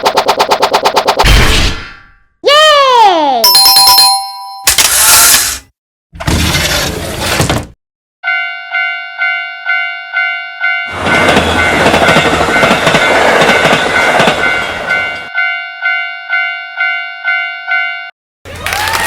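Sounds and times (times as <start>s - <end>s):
railroad crossing bell dinging: 3.4s - 4.7s, 8.2s - 18.2s
train passing: 10.6s - 15.4s.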